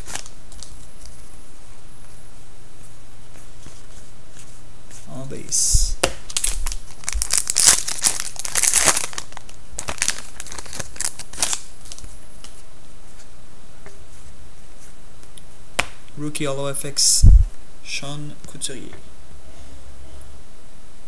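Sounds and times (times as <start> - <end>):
wrapper being torn and crinkled: 6.3 - 12.1.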